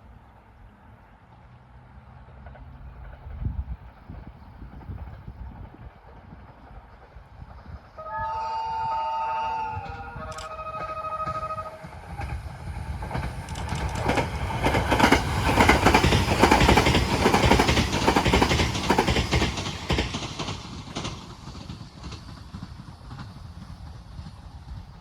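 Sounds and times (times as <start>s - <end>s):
electric train passing: 0.0s - 25.0s
two-tone train horn: 8.0s - 12.3s
wheels clicking over rail joints: 9.6s - 25.0s.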